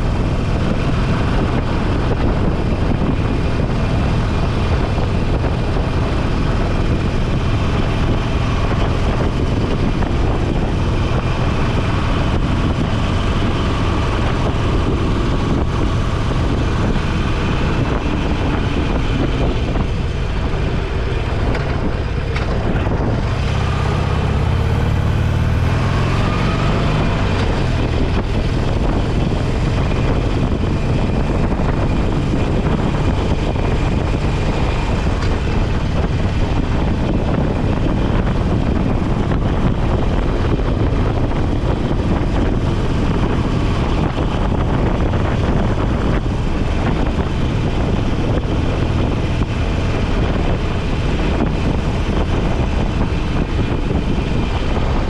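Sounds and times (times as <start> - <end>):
motorcycle engine running: 0.0 - 55.0
wind rushing over microphone: 0.0 - 55.0.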